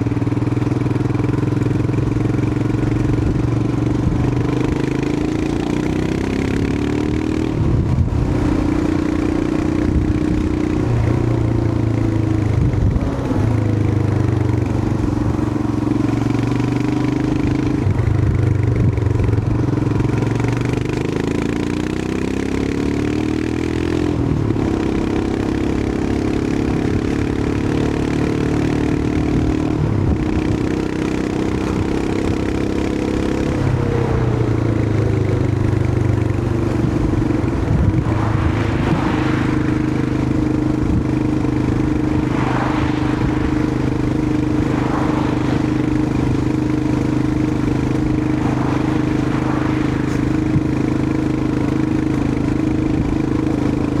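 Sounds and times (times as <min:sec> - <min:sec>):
motorcycle engine running: 0:00.0 - 0:54.0
brief rushing noises: 0:36.6 - 0:51.6.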